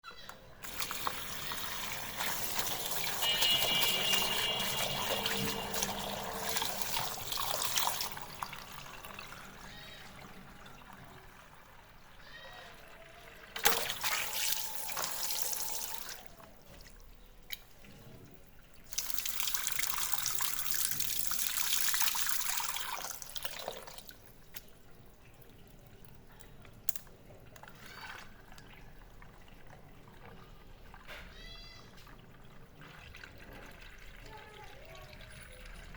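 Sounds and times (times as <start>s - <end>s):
water trickling: 0.5s - 35.9s
water balloons bursting: 0.6s - 8.6s
water splashing: 0.6s - 11.9s.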